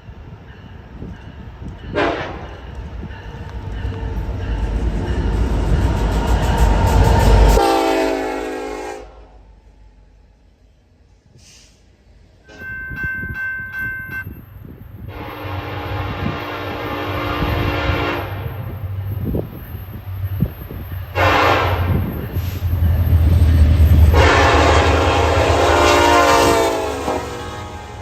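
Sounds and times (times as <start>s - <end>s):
rumble of passing train: 0.0s - 28.0s
train horn chords: 1.9s - 2.5s, 7.5s - 9.6s, 15.1s - 18.7s, 21.1s - 22.0s, 24.0s - 28.0s.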